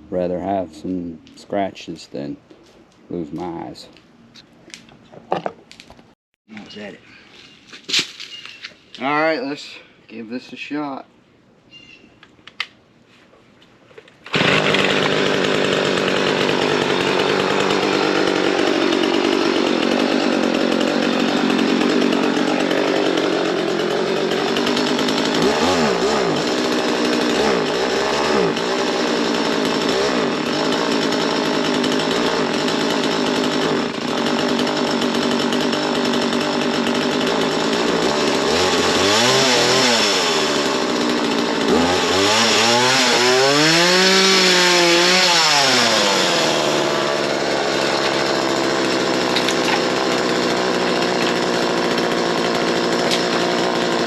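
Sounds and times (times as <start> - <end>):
chainsaw engine running: 14.3 - 54.0.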